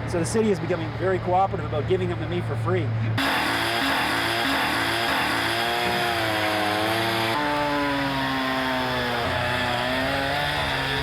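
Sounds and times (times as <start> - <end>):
chainsaw cutting log: 3.2 - 11.0.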